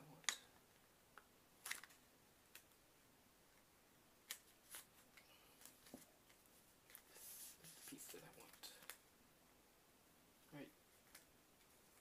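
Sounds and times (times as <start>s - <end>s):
soft rustling of vinyl sheets: 0.0s - 9.7s, 10.3s - 12.0s.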